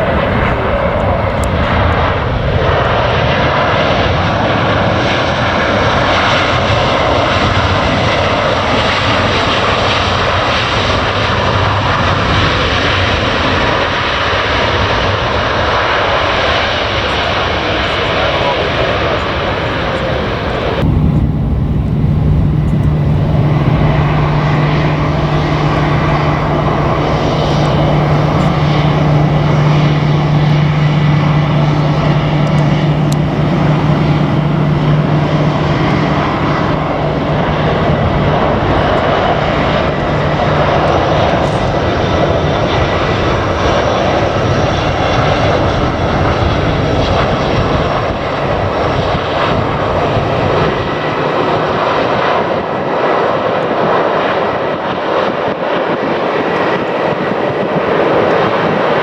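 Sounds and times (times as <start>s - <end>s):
low steady hum: 0.0s - 2.7s, 17.0s - 52.3s
jet landing: 0.0s - 3.0s, 16.6s - 52.5s.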